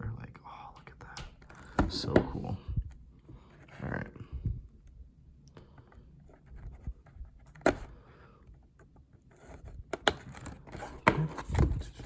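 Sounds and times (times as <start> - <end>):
cardboard and paper rustling: 8.8 - 12.0.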